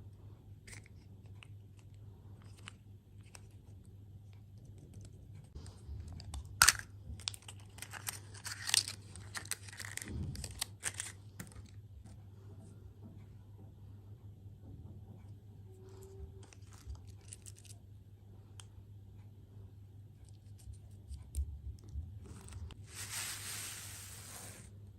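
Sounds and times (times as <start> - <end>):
steady low hum: 0.0 - 24.9
crinkling tearing rustles: 6.6 - 11.2.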